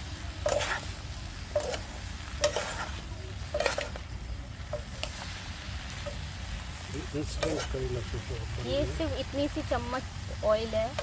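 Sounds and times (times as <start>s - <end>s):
frying sizzle: 0.0s - 11.0s
spatula scraping a pan: 0.4s - 6.3s, 7.2s - 7.8s.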